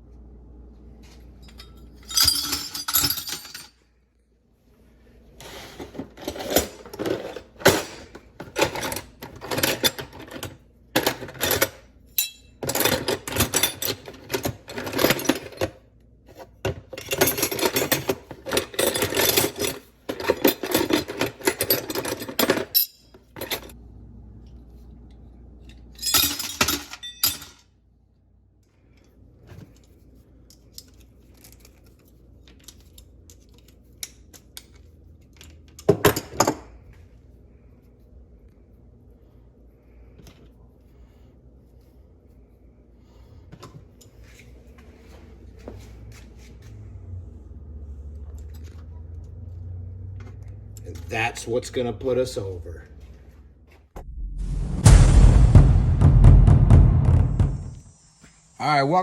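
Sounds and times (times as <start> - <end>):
scrap copper clinking: 1.4 - 3.8, 11.3 - 15.6.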